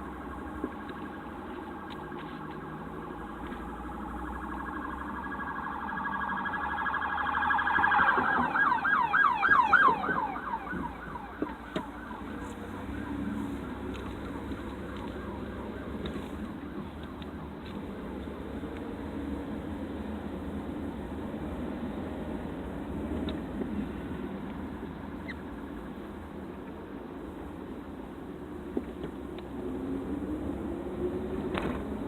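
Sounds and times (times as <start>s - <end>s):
emergency siren yelping: 0.0s - 18.3s
low traffic rumble: 0.0s - 32.0s.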